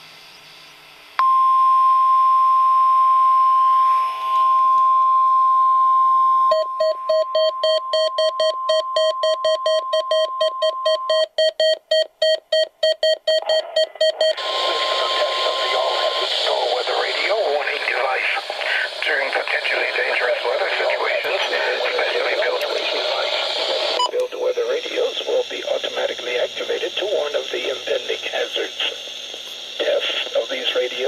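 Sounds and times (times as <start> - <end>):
steady high alarm tone: 1.2 - 11.2, 14.1 - 16.7.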